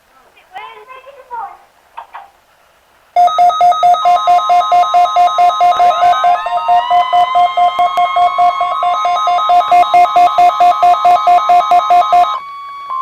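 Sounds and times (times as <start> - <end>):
rapid alarm beeps: 3.2 - 13.0
steady warning alarm tone: 3.2 - 13.0.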